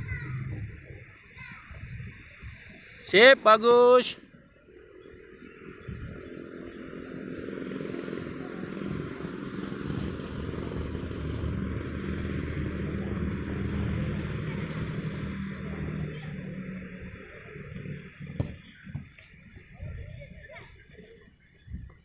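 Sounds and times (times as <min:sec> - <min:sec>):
vehicle engine passing by: 0:04.8 - 0:21.0.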